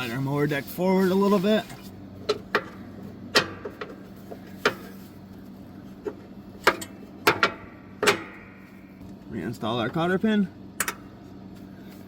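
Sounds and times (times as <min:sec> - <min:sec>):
metal clanks and taps: 0:06.0 - 0:08.5.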